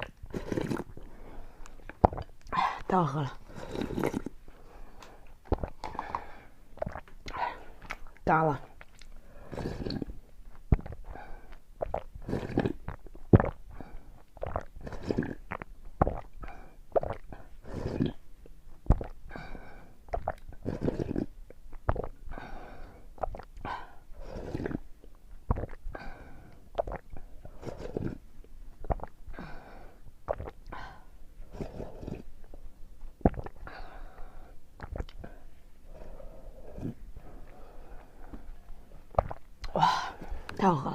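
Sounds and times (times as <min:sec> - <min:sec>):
wet mouth clicks and slurps: 0:00.0 - 0:02.9, 0:03.5 - 0:04.4, 0:05.0 - 0:19.2, 0:20.1 - 0:22.2, 0:23.2 - 0:23.7, 0:24.3 - 0:29.2, 0:30.3 - 0:30.8, 0:31.5 - 0:33.7, 0:34.8 - 0:35.4, 0:39.1 - 0:40.6
person gulping and swallowing: 0:00.0 - 0:40.9.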